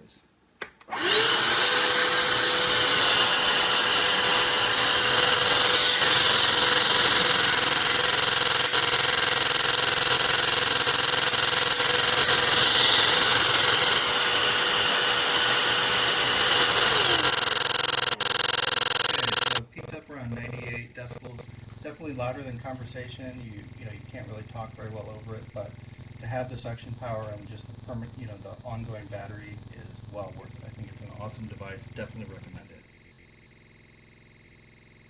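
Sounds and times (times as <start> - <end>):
hand vacuum motor whine: 0.9 - 19.6.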